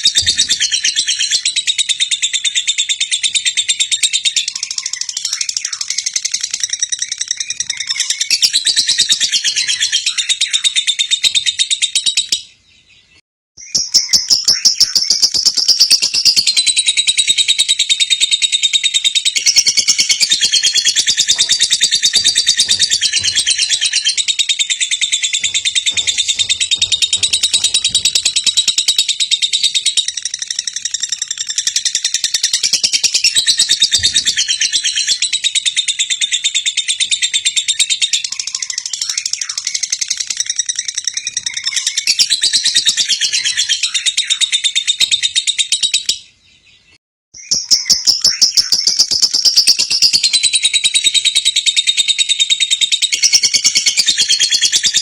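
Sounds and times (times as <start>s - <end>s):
lovebird chattering trill: 13.6s - 46.1s.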